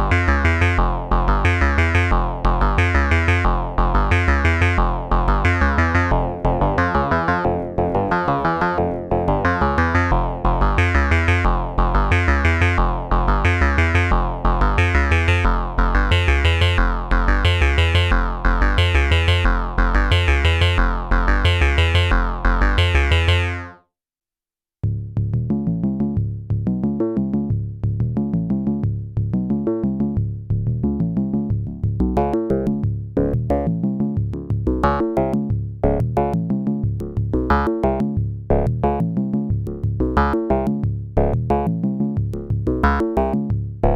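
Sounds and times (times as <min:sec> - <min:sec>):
sequenced synth pattern: 0:00.0 - 0:23.8
quick synth notes with clicks: 0:03.9 - 0:23.8.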